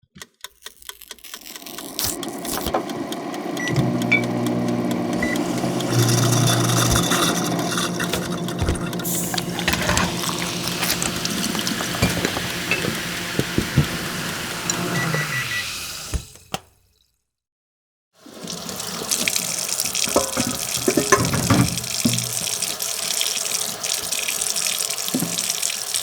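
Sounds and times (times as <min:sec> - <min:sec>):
appliance electric hum: 0:01.6 - 0:16.5.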